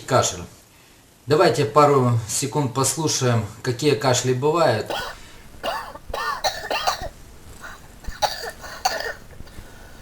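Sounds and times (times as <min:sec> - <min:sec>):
person coughing harshly: 0:04.9 - 0:09.7.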